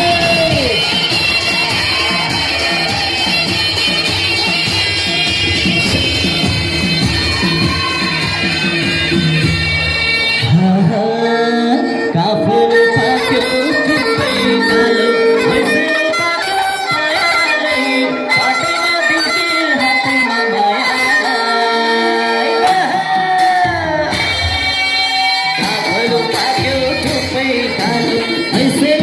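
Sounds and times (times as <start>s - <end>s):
drumming: 0.0s - 10.6s, 22.6s - 29.0s
loud reed-pipe melody: 0.0s - 29.0s.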